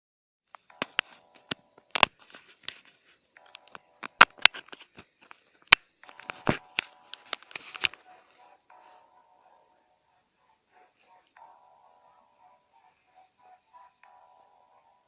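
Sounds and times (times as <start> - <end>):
sharp clicks and crackles: 0.6 - 8.0.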